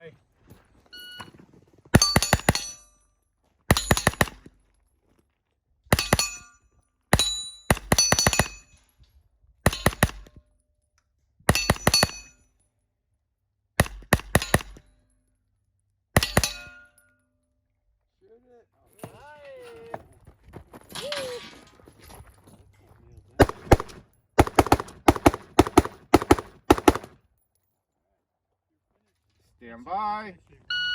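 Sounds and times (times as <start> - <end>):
rifle shots: 2.0 - 2.8, 3.7 - 4.5, 7.2 - 8.7, 9.7 - 10.3, 11.5 - 12.3, 13.8 - 14.8, 23.4 - 27.2
steel targets ringing: 2.0 - 3.0, 3.7 - 4.4, 5.9 - 6.6, 7.2 - 8.8, 11.5 - 12.4, 16.2 - 17.0.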